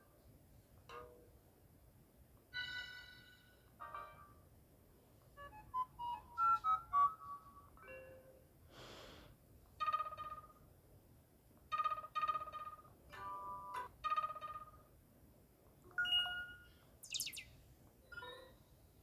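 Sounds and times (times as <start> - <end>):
phone melody of short beeps: 15.9 - 17.4.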